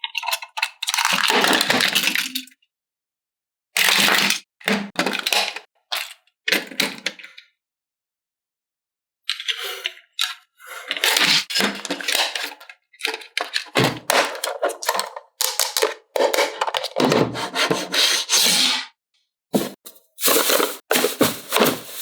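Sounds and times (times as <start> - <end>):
plastic toy pieces rustling: 13.1 - 17.0, 19.8 - 22.0.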